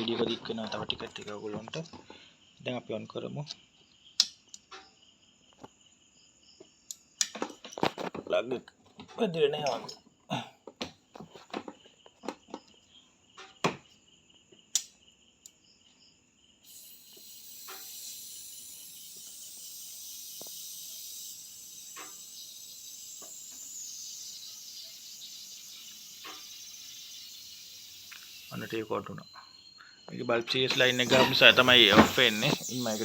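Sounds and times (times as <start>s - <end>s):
television high hiss: 30.6s - 33.0s.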